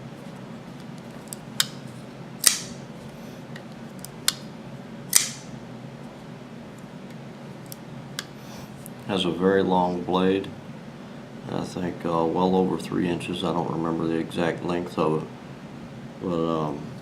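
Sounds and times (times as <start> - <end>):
knife blade snapping open: 5.1 - 5.5.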